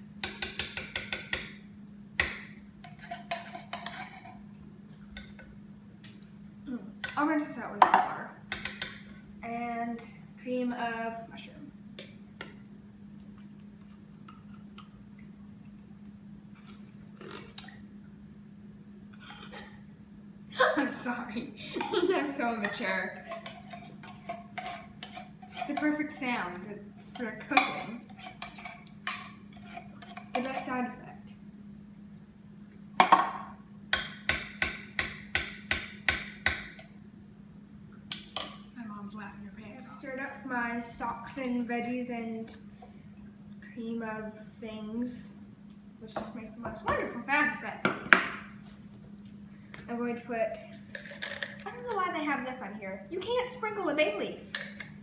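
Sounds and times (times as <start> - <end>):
steady low hum: 0.0 - 55.0
sharp knocks of kitchenware: 0.2 - 1.6, 33.0 - 36.8, 47.9 - 48.4.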